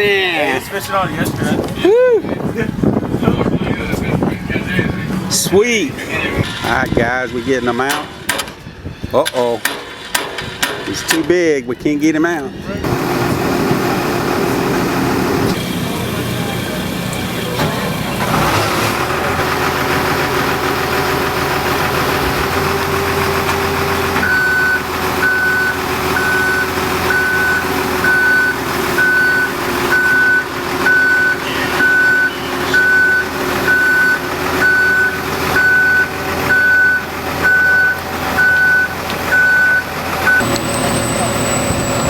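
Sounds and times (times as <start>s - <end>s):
vehicle engine running: 12.8s - 42.0s
reversing alarm beeping: 22.6s - 42.0s.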